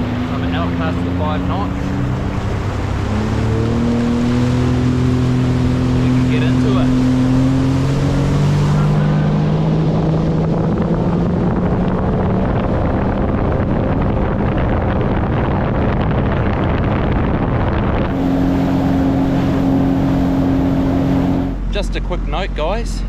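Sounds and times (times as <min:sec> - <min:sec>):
jet ski engine: 0:00.0 - 0:23.0.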